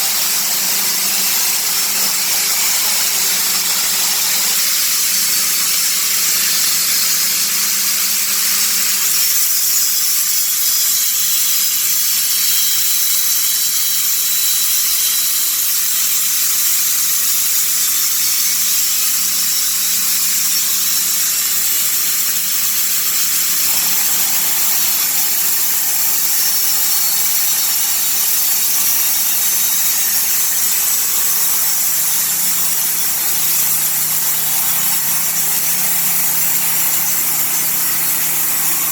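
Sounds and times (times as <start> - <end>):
sawmill blade cutting log: 0.0 - 10.0, 18.0 - 38.9.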